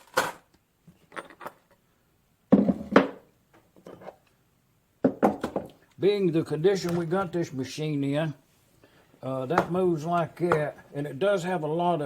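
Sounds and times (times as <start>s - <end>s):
metal clunks and knocks: 5.0s - 5.7s.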